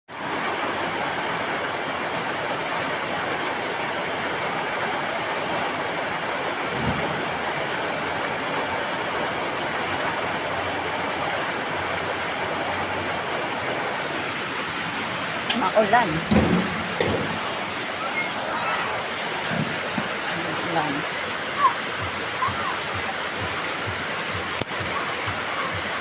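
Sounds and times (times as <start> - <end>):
heavy rain: 0.1 - 26.0
low thump: 15.5 - 17.7.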